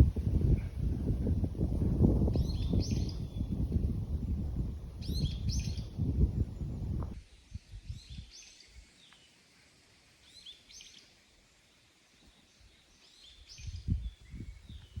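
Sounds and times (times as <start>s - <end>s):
small bird chirping: 2.3s - 3.6s, 5.0s - 6.8s.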